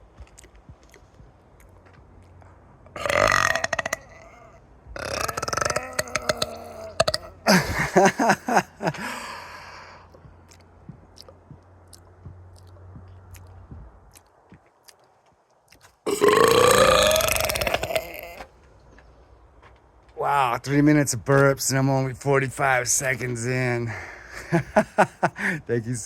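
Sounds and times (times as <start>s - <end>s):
person burping: 3.0s - 9.9s, 16.1s - 18.5s.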